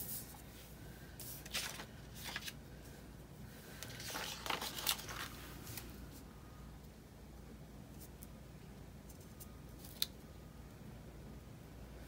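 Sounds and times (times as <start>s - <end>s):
paper sheets rustling: 1.2s - 2.6s, 3.8s - 6.2s.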